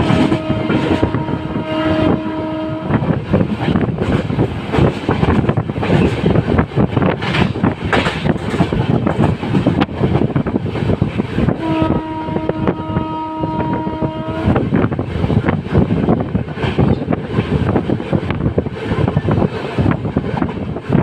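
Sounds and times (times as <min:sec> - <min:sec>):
locomotive horn blast: 0:00.0 - 0:03.1, 0:11.6 - 0:14.6
train rumble and wind noise: 0:00.0 - 0:21.0.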